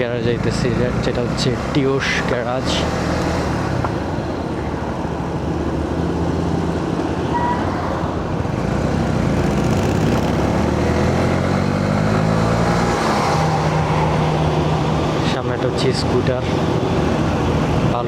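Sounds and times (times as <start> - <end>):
road and wind noise: 0.0 - 18.0
motorcycle engine running: 8.4 - 12.2.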